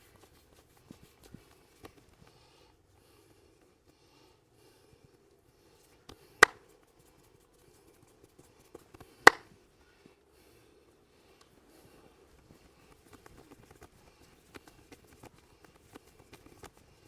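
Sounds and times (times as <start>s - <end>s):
sharp loud massage clacks: 9.2s - 9.4s.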